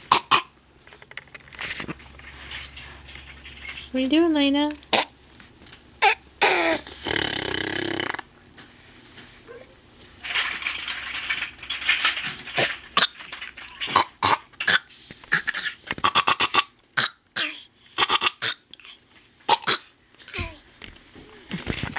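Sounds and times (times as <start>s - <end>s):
baby coughing and grunting: 0.0s - 0.5s, 4.9s - 5.2s, 6.0s - 7.2s, 13.9s - 20.6s.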